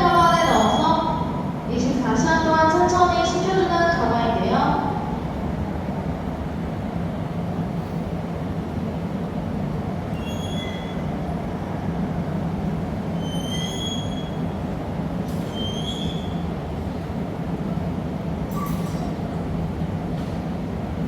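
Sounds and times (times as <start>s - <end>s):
short high squeals: 0.2s - 1.1s, 10.1s - 11.2s, 13.2s - 14.5s, 15.4s - 16.5s.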